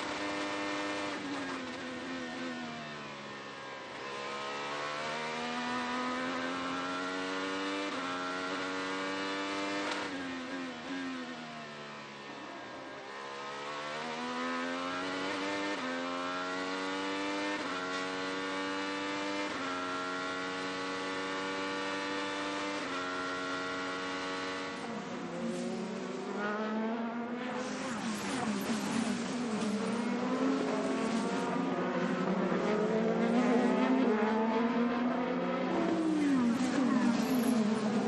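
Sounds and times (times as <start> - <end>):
race car engine running: 23.3 - 38.0.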